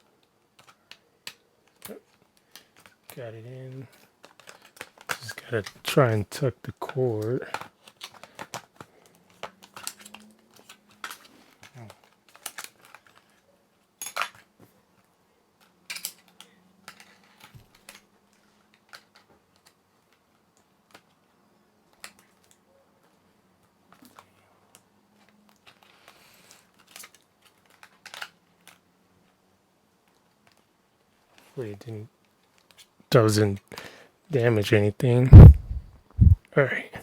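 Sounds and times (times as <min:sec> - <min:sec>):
sharp knocks: 0:35.3 - 0:36.4.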